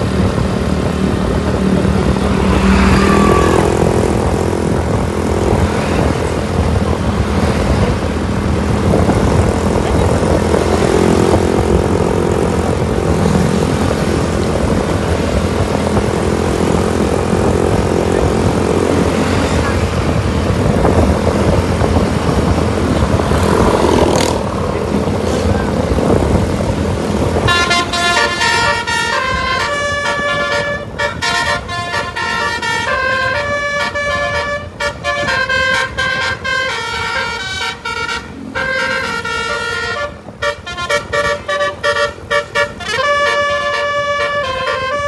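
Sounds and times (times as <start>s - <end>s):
road noise: 0.0s - 45.0s
vehicle engine at speed: 0.0s - 45.0s.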